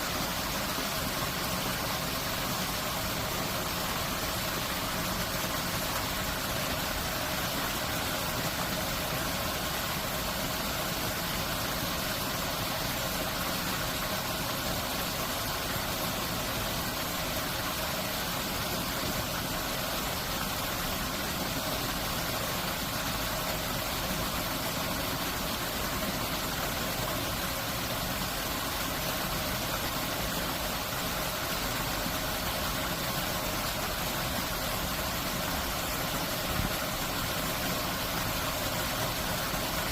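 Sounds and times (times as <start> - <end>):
water rushing through arches: 0.0 - 39.9.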